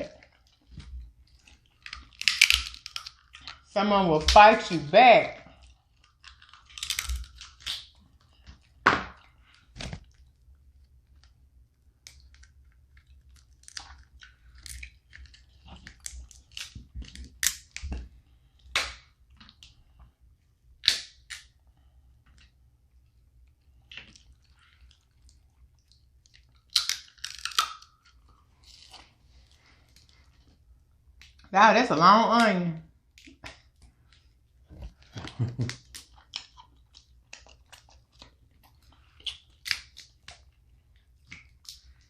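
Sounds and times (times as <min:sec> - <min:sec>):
crab shells cracking: 0:01.4 - 0:03.7, 0:06.0 - 0:08.0, 0:12.0 - 0:18.0, 0:20.8 - 0:21.5, 0:25.9 - 0:28.9, 0:35.2 - 0:38.4, 0:39.2 - 0:40.5
eating sounds: 0:33.1 - 0:42.0.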